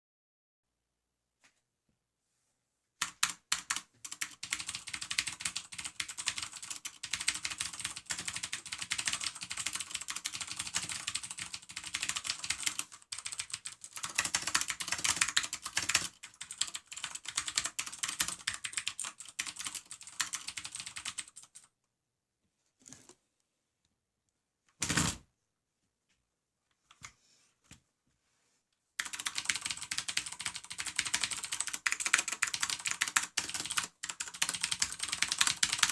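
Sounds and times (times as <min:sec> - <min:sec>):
mechanical keyboard typing: 0:03.0 - 0:21.7, 0:29.0 - 0:35.9.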